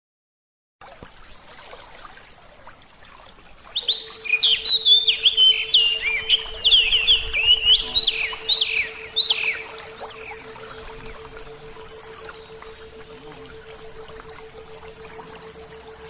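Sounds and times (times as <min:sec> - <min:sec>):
birds chirping: 0:03.8 - 0:16.0
steady low hum: 0:03.8 - 0:16.0.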